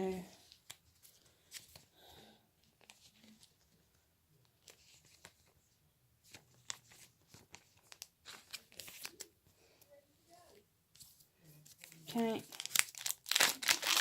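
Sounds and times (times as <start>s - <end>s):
plastic packaging crinkling: 11.8s - 14.0s.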